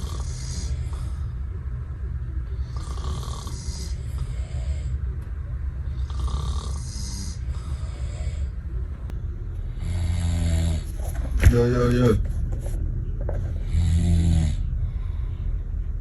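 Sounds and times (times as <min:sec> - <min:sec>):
person snoring: 0:00.0 - 0:01.2, 0:02.6 - 0:05.0, 0:05.9 - 0:08.6, 0:09.7 - 0:10.9, 0:13.6 - 0:14.7.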